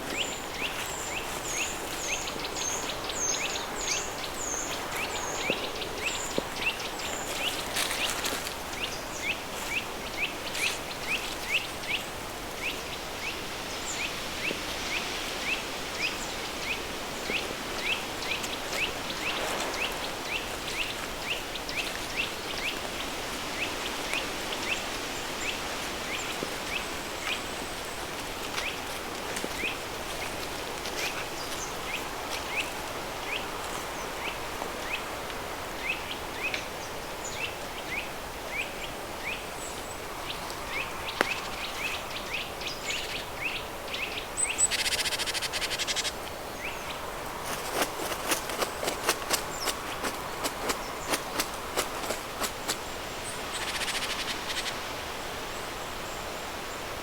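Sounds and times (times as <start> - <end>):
steady hiss: 4.2 - 29.0.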